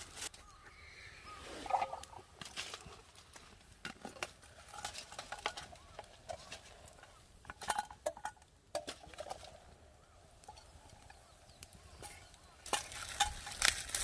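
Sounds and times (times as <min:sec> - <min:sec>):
utensils clinking on metal pot: 0:03.8 - 0:09.6, 0:12.0 - 0:14.0.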